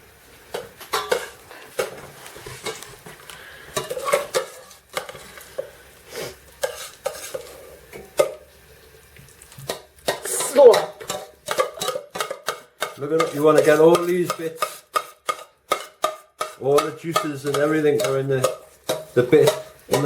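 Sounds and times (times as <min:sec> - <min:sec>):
spoon knocking on pan: 0:00.5 - 0:02.0, 0:09.6 - 0:20.0
spoon scraping a pan: 0:00.5 - 0:08.4, 0:09.6 - 0:20.0.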